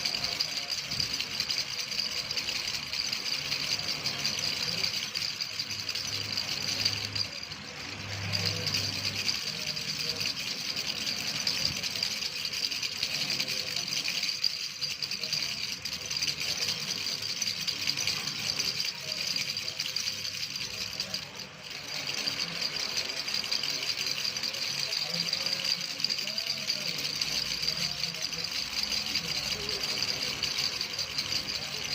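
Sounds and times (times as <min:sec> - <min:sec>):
baby rattle shaking: 0:00.0 - 0:31.9.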